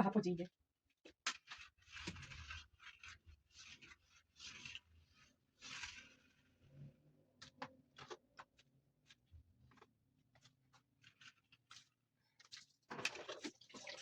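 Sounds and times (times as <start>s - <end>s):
light taps and scrapes: 1.0s - 6.8s.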